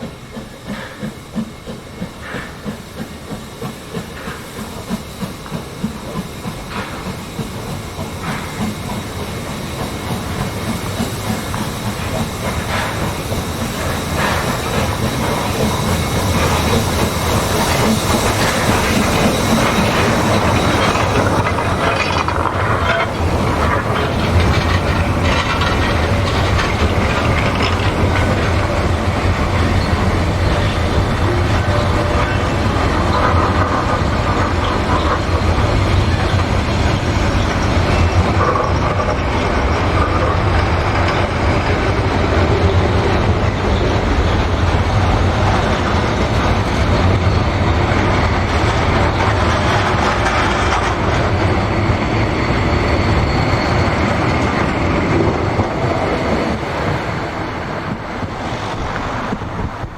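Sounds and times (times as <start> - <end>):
train wheels rumbling on rails: 0.0 - 59.9.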